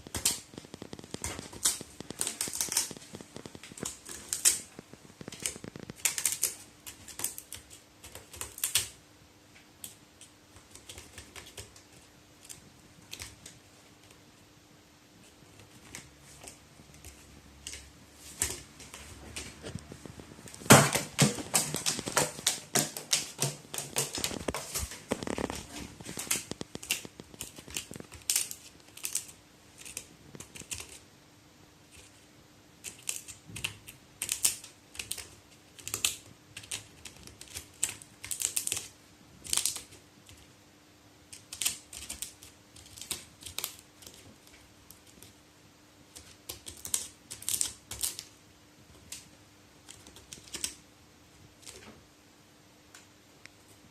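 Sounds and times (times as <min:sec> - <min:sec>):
crow's beak pecking and tapping: 0:20.6 - 0:31.0.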